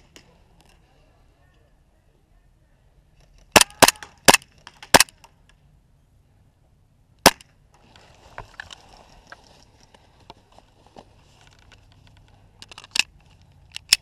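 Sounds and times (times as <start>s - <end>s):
airsoft pistol shots: 3.5s - 5.1s
faint rustling: 7.8s - 13.7s.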